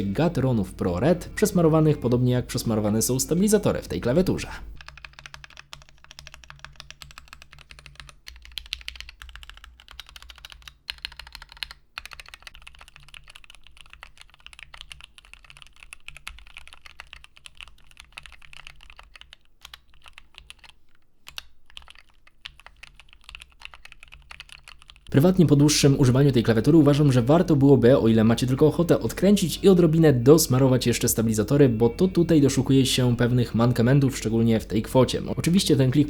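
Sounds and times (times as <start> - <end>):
fast typing on mechanical keyboard: 4.8 - 25.1.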